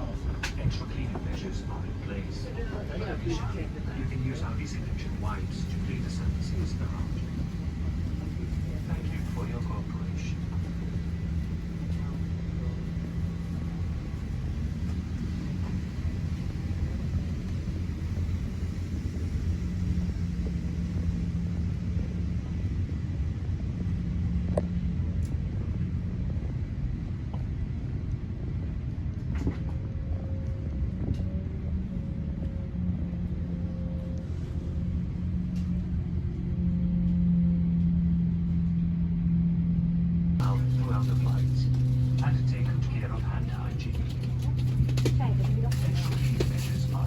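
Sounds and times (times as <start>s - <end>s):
cabin ventilation hum: 0.0s - 47.0s
droning tone: 29.4s - 47.0s.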